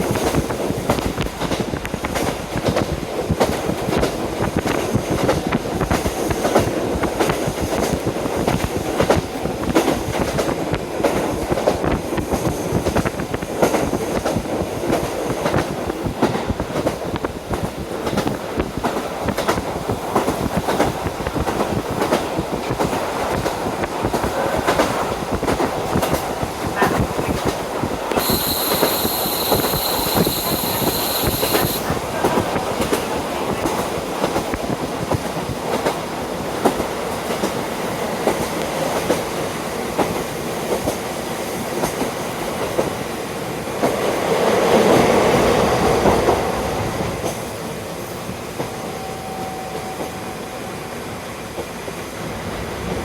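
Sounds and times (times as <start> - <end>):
train running noise: 0.0 - 53.0
wind: 0.0 - 53.0
high steady squeal: 28.1 - 31.9.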